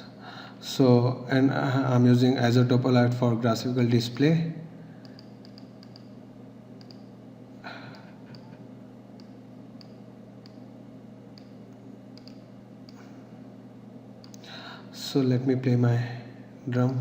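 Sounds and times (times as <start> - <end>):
steady low hum: 0.0 - 17.0
computer mouse clicks: 5.0 - 6.2, 6.8 - 7.1, 7.9 - 8.6, 9.2 - 10.7, 11.4 - 13.1, 14.2 - 14.5.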